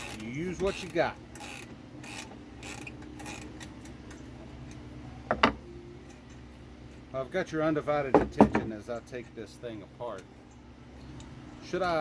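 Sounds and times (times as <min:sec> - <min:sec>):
socket ratchet clicking: 0:00.0 - 0:03.7.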